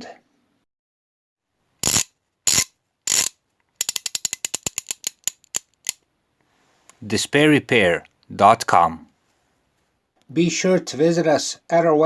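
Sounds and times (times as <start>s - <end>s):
quick run of clicks: 1.8s - 6.0s.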